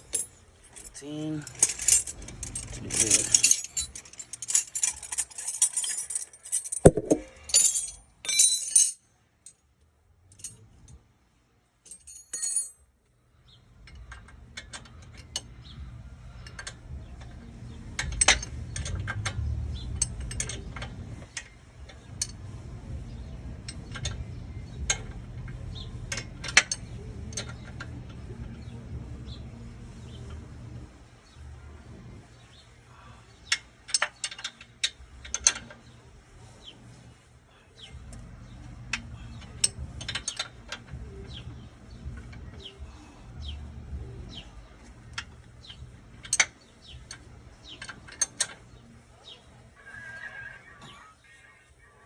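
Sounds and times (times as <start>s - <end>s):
metal tools clinking: 0.0s - 9.0s, 11.9s - 12.8s
low steady hum: 0.0s - 49.8s
sharp metal knock: 6.9s - 7.4s
light ticks of tool work: 13.8s - 15.7s, 33.4s - 36.0s, 44.8s - 48.8s.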